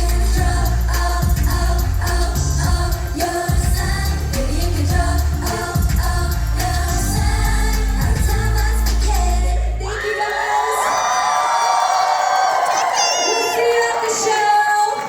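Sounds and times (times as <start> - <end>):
heavy bass beat: 0.0 - 9.8
female group singing pop song: 0.0 - 10.9.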